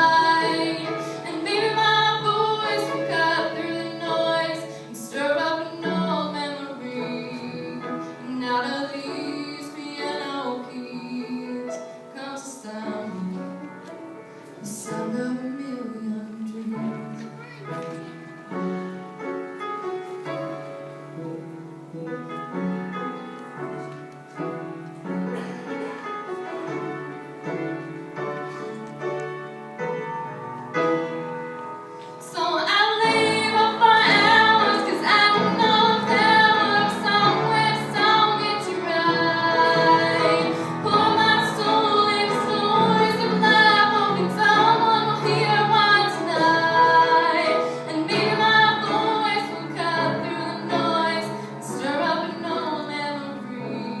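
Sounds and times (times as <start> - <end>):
girl singing a ballad: 0.0 - 13.7, 14.6 - 18.1, 32.2 - 54.0
live instrumental accompaniment: 0.0 - 54.0.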